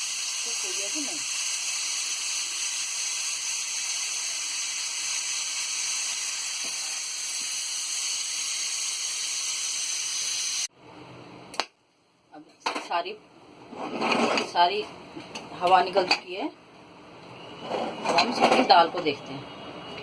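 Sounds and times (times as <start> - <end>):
steam hissing from pressure cooker: 0.0 - 10.7.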